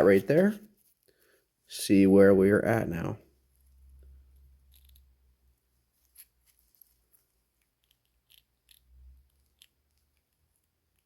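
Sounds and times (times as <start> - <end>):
faint metallic clicks and scrapes: 3.5 - 5.2, 5.8 - 11.0.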